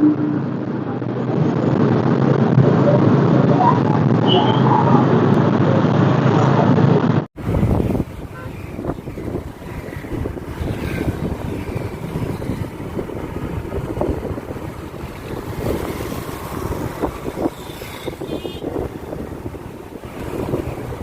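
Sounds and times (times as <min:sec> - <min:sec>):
road and engine rumble: 0:00.0 - 0:21.0
wind buffeting microphone: 0:00.0 - 0:21.0.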